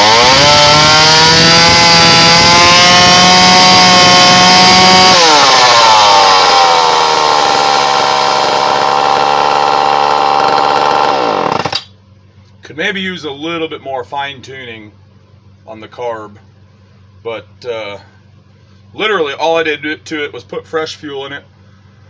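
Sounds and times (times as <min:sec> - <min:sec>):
chainsaw running: 0:00.0 - 0:11.9.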